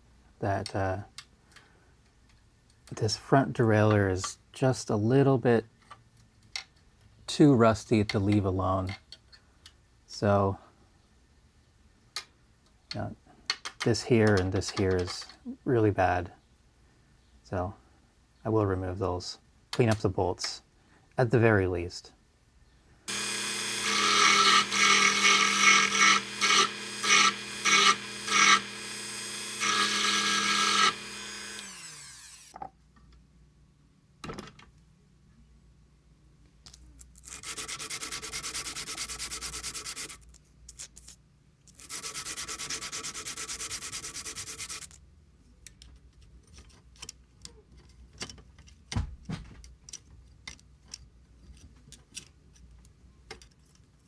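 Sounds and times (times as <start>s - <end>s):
small clicks of parts handled: 5.8s - 7.1s, 8.8s - 9.8s, 36.4s - 37.2s, 45.5s - 49.0s, 49.6s - 54.0s
power tool grinding: 23.1s - 32.6s, 41.9s - 44.9s.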